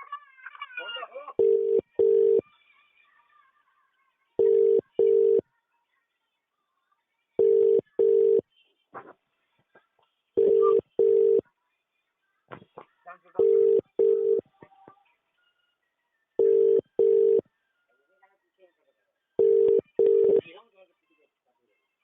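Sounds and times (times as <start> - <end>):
telephone ringback tone: 1.4 - 2.4, 4.4 - 5.4, 7.4 - 8.4, 10.4 - 11.4, 13.4 - 14.4, 16.4 - 17.4, 19.4 - 20.4.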